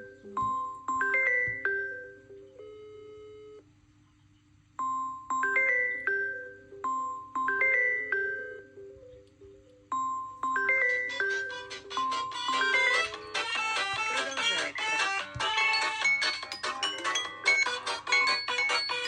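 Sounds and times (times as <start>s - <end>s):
bell-like ringtone melody: 10.0s - 19.0s.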